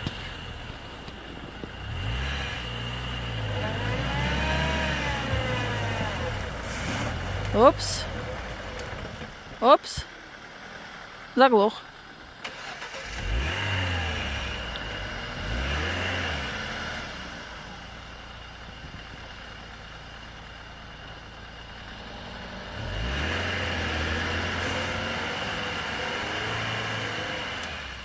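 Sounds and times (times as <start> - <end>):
car engine revving: 0.0 - 11.2, 12.0 - 19.9, 20.6 - 28.0.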